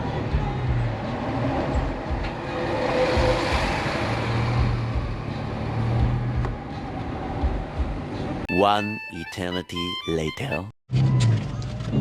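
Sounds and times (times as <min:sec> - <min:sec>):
car engine hum: 0:00.0 - 0:08.4.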